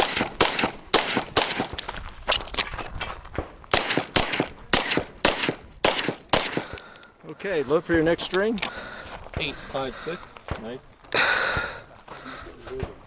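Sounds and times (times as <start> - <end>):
pistol shots: 0.0 - 1.8, 3.4 - 6.8.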